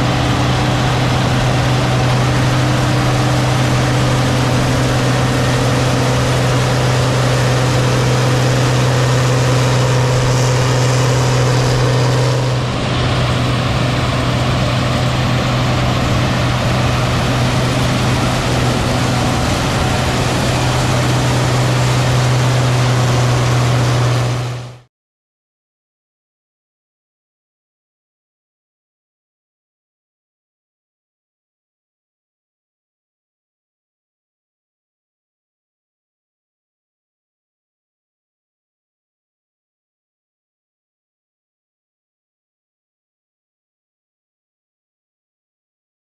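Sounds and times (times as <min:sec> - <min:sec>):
machinery humming: 0:00.0 - 0:24.8
dense rushing noise: 0:00.0 - 0:24.9.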